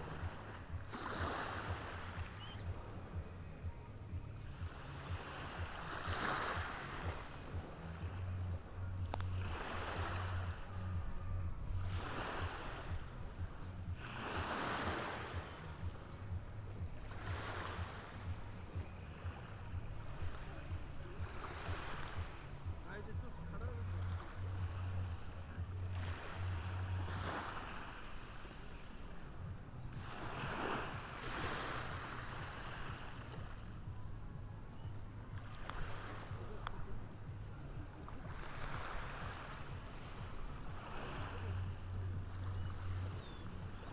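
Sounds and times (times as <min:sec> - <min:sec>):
low surf rumble: 0:00.0 - 0:27.1, 0:36.2 - 0:43.9
low steady hum: 0:00.0 - 0:27.2
waves breaking on beach: 0:00.0 - 0:43.9.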